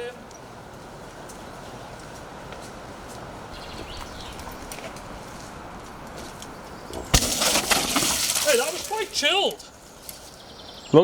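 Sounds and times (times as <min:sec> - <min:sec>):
bike rolling over dirt: 0:03.0 - 0:10.4
mountain bike landing thud: 0:06.9 - 0:09.2.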